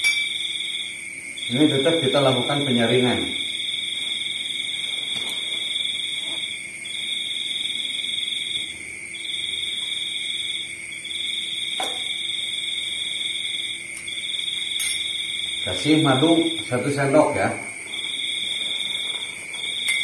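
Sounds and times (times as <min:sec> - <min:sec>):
insects trilling: 0:00.0 - 0:20.0
faint clinks: 0:14.7 - 0:15.3, 0:19.5 - 0:20.0.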